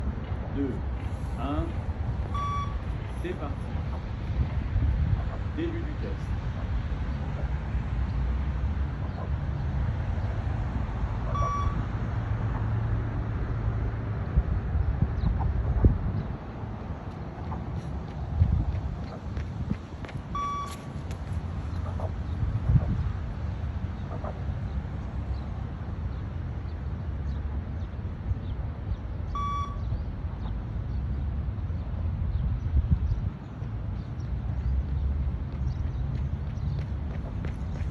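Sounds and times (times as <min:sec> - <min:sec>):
steady low rumble: 0:00.0 - 0:35.8
short electronic beep: 0:02.3 - 0:02.8, 0:11.3 - 0:11.8, 0:20.4 - 0:20.8, 0:29.4 - 0:29.8.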